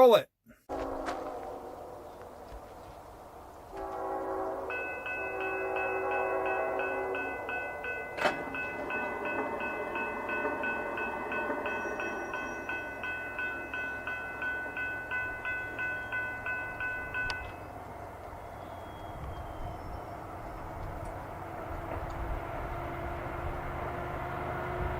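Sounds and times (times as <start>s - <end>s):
train horn: 0.7s - 2.7s, 3.7s - 10.0s
passing train rumble: 0.7s - 24.9s
crossing bell ringing: 4.0s - 18.0s.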